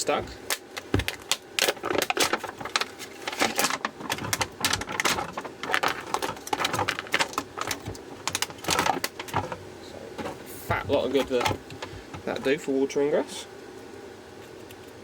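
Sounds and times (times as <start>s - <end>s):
plastic casing clicking and scraping: 0.5s - 9.6s.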